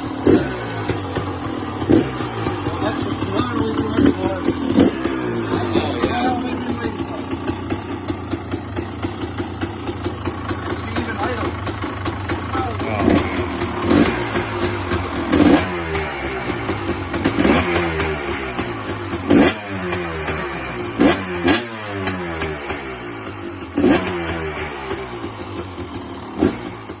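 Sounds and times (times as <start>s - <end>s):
dirt bike engine revving: 0.0s - 27.0s.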